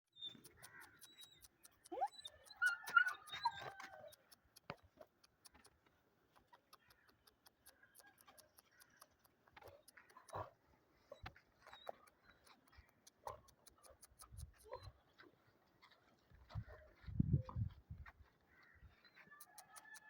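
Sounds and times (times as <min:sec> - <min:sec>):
dog whining: 0:01.9 - 0:04.1
faint fast ticking: 0:06.5 - 0:10.4, 0:12.1 - 0:14.8.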